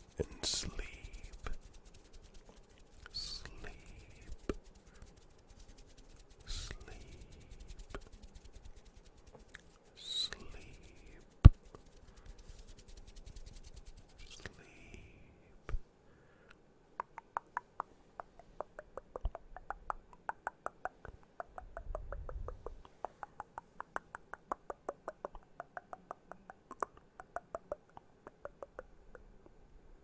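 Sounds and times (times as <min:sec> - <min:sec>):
fingertips tapping on microphone: 0:00.0 - 0:14.6, 0:17.0 - 0:29.6.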